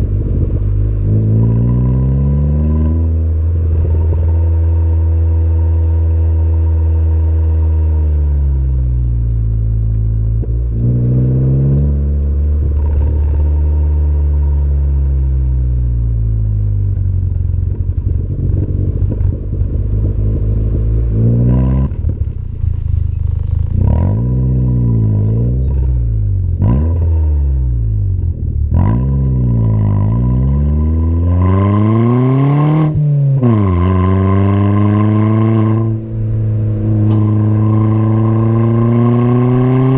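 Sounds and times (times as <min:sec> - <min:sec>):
car engine revving: 0:00.0 - 0:39.9
exhaust cracking: 0:00.0 - 0:39.9.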